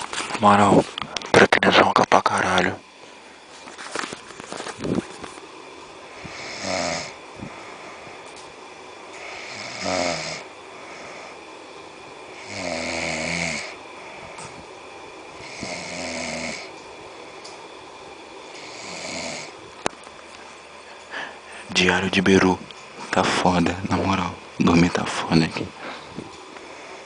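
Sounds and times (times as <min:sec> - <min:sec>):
person snoring: 0:06.2 - 0:07.2, 0:09.2 - 0:11.4, 0:12.3 - 0:13.8, 0:15.4 - 0:16.7, 0:18.6 - 0:19.6.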